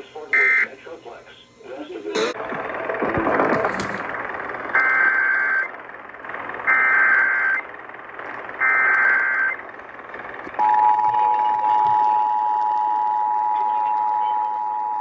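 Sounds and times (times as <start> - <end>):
radio hiss: 0.0 - 4.6
two-tone attention signal: 2.2 - 4.0.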